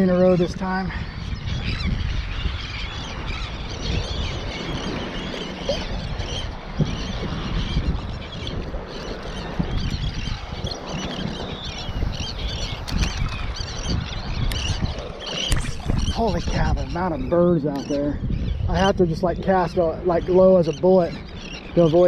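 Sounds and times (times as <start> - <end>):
seabirds calling: 0.0 - 22.0
wind: 0.0 - 22.0.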